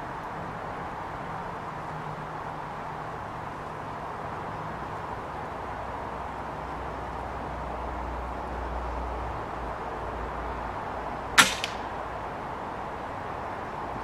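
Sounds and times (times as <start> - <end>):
steady background hiss: 0.0 - 14.0
air rifle shot: 11.4 - 12.0.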